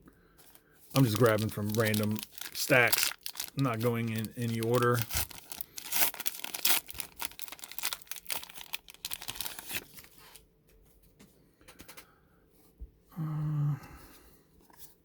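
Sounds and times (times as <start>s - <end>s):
wrapper crackling and tearing: 0.9s - 10.4s.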